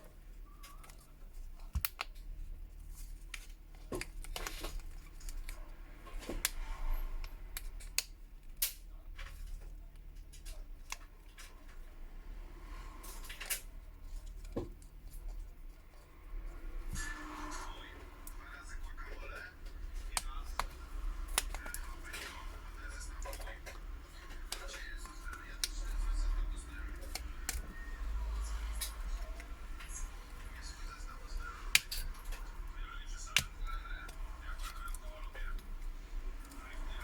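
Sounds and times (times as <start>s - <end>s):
plastic clips clicking: 0.6s - 2.2s, 20.0s - 27.8s, 31.2s - 35.7s.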